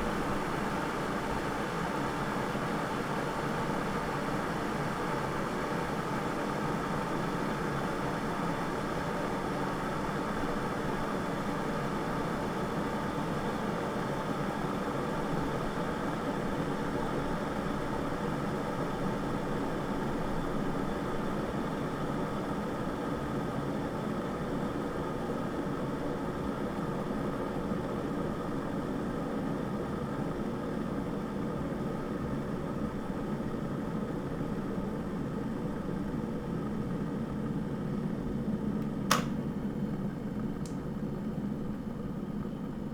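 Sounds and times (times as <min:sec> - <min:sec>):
kettle boiling with rumbling hiss: 0:00.0 - 0:42.9
kettle switch click: 0:39.1 - 0:39.4.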